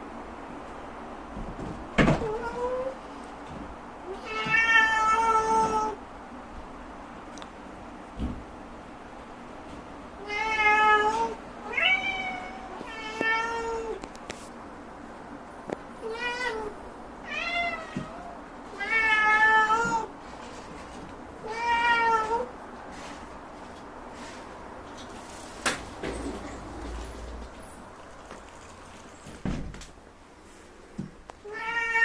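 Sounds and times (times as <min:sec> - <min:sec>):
cat meowing: 0:10.2 - 0:14.0, 0:31.4 - 0:32.0.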